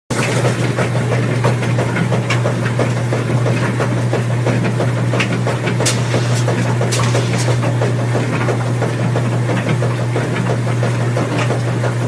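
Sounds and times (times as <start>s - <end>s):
washing machine running: 0.1s - 12.0s
small knocks and swishes: 5.8s - 7.8s.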